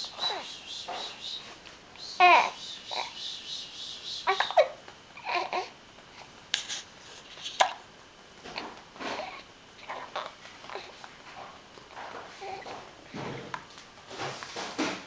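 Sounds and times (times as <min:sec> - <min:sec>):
baby fussing and babbling: 0:00.0 - 0:00.5, 0:02.2 - 0:03.2, 0:04.2 - 0:05.8, 0:09.1 - 0:11.0, 0:12.3 - 0:12.8.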